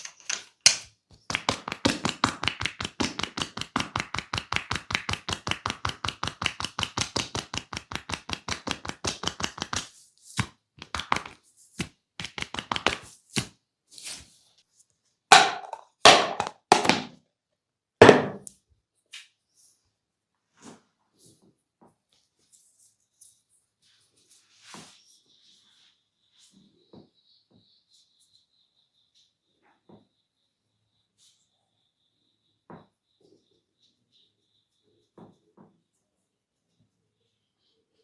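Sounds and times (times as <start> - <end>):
hands chopping and tapping on body: 1.3 - 13.5.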